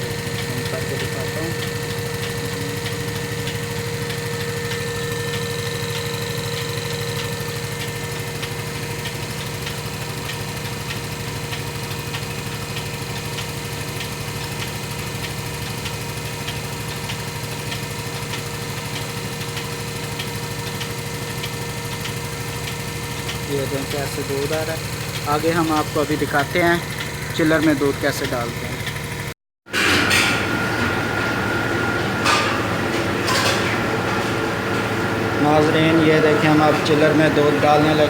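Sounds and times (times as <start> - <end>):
pulsator clicking: 0.0 - 29.3
vacuum pump humming: 0.0 - 38.0.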